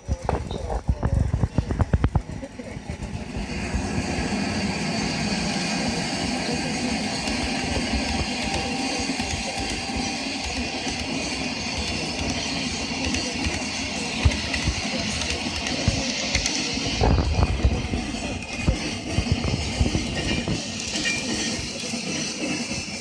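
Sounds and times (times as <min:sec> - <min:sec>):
model train rolling on track: 0:00.0 - 0:23.0.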